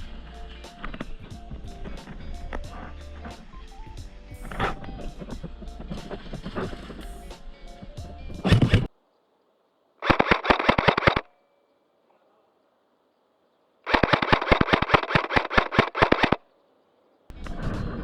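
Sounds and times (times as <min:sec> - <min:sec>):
airsoft gun full-auto bursts: 0:10.0 - 0:11.3, 0:13.9 - 0:16.4.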